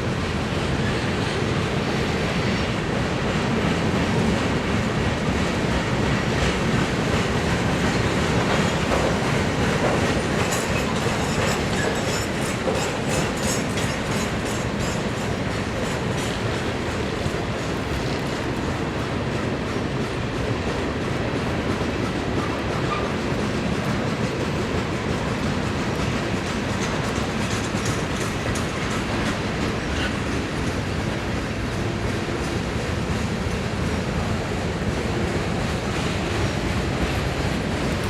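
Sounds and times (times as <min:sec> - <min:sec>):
freight train rumbling past: 0:00.0 - 0:38.0
wheels clicking over rail joints: 0:05.9 - 0:33.6.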